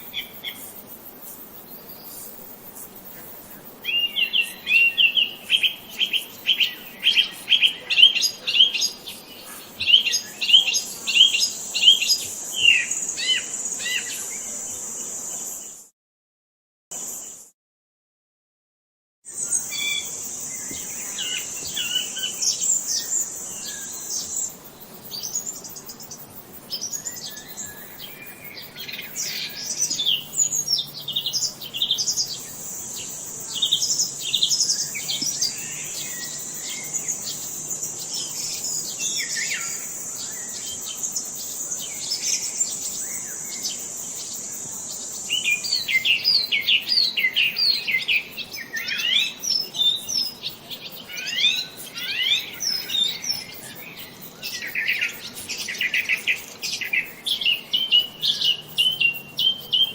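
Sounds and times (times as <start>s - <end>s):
songbirds chirping: 0.0s - 15.8s, 19.3s - 59.9s
high-pitched insect drone: 19.3s - 59.9s.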